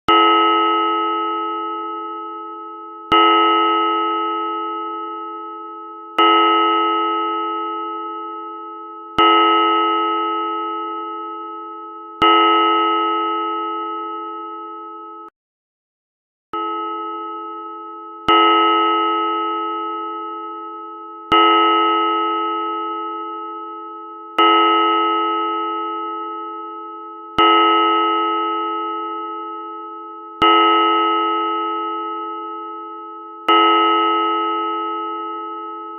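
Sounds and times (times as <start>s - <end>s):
church bell ringing: 16.6s - 35.9s.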